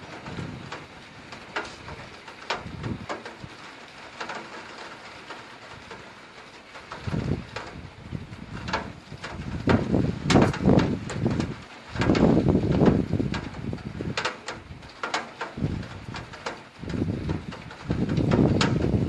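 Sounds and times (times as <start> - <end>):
thunder rumbling: 0.0 - 3.6, 6.9 - 14.9, 15.6 - 19.0
heavy rain hiss: 0.0 - 19.0.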